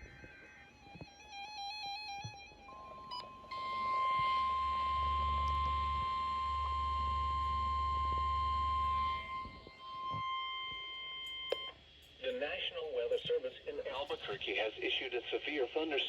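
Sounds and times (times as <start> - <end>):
low buzzing hum and hiss: 0.0 - 16.0
steady alarm beep tone: 2.2 - 12.0.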